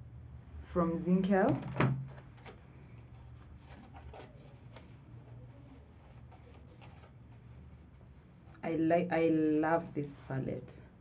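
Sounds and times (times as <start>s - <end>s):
low room hum: 0.0s - 11.0s.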